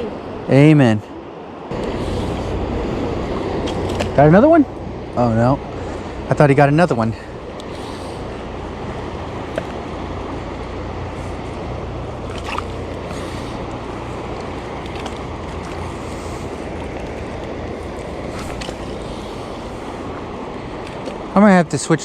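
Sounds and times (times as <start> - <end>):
fast-flowing river water: 5.3 - 22.0.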